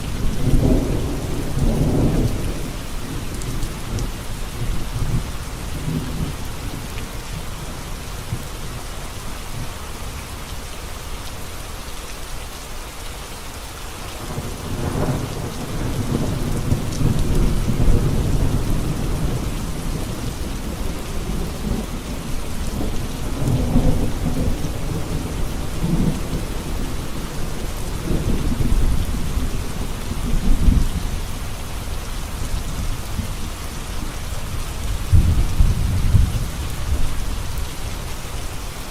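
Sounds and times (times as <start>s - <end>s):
heavy rain on road: 0.0s - 38.9s
rolling thunder: 0.2s - 6.8s, 14.2s - 31.2s, 34.8s - 37.7s.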